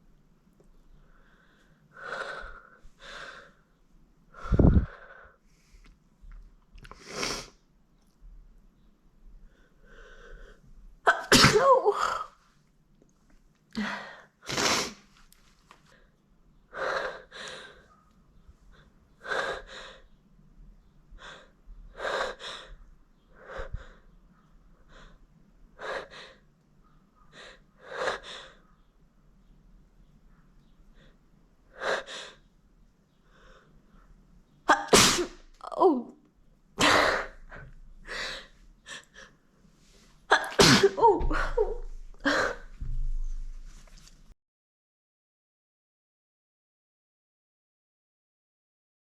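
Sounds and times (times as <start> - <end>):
woman sneezing: 11.1 - 12.3, 34.7 - 35.9, 40.3 - 41.9.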